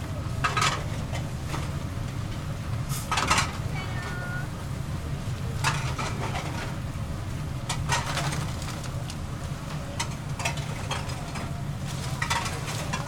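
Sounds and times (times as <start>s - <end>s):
low machine hum: 0.0s - 13.0s
kitchen utensils clacking: 7.7s - 8.8s, 10.0s - 13.0s.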